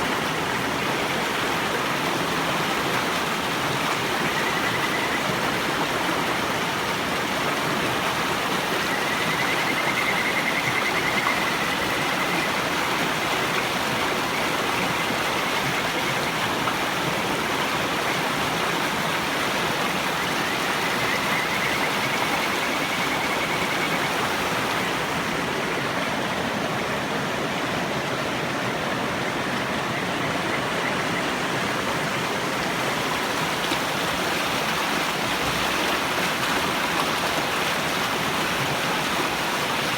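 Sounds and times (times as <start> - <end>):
river rushing: 0.0 - 39.9
frogs trilling: 3.9 - 5.7, 8.6 - 16.5, 19.7 - 25.2, 28.6 - 32.3.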